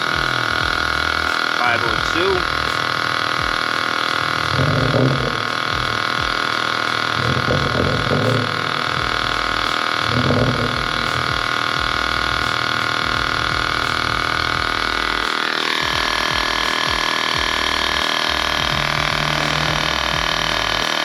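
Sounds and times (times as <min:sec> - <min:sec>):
tyre inflator compressor whining: 0:00.0 - 0:21.0.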